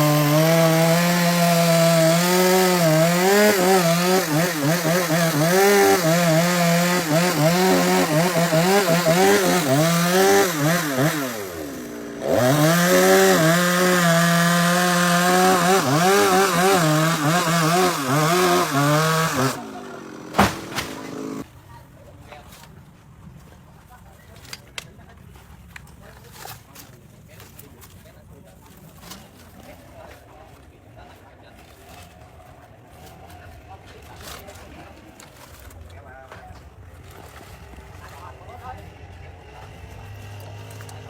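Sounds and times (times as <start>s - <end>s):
chainsaw cutting wood: 0.0s - 21.4s, 40.1s - 41.0s.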